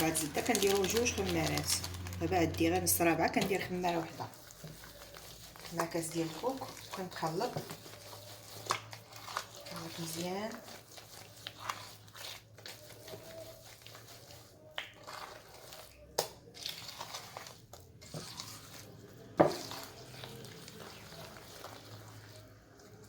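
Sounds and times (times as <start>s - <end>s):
batter squishing and scraping: 0.0s - 23.0s.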